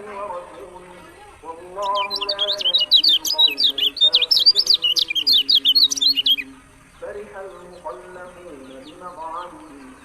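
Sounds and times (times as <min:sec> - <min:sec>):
low drawn-out chanting voice: 0:00.0 - 0:10.0
bird singing high sweeping chirps: 0:01.7 - 0:09.6.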